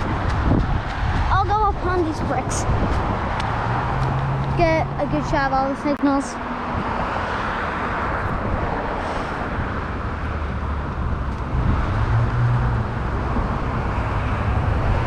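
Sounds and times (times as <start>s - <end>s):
vehicles passing: 0.0s - 15.0s.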